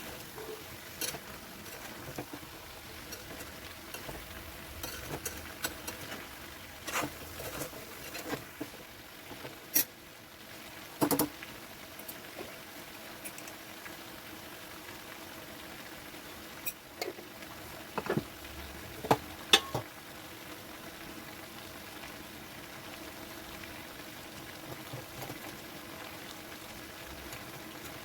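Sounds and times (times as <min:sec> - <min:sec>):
food sizzling in a pan: 0:00.0 - 0:28.0
spoon knocking against pan: 0:19.0 - 0:19.9.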